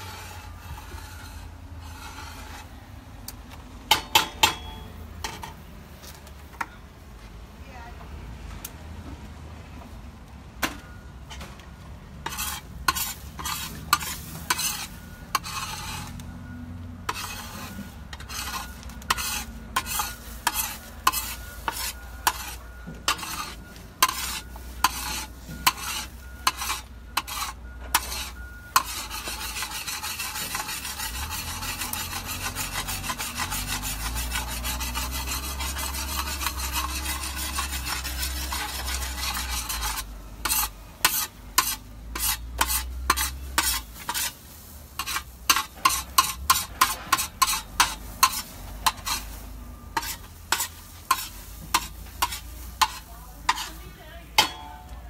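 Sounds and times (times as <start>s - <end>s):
spatula scraping a pan: 0.0s - 3.1s, 12.2s - 55.0s
food sizzling: 28.1s - 55.0s.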